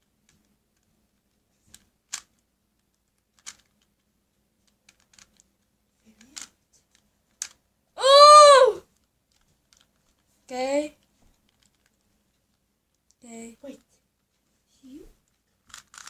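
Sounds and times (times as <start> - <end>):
plastic puzzle cube clicks: 1.7 - 3.8, 4.9 - 5.5, 6.2 - 7.6, 15.6 - 16.0.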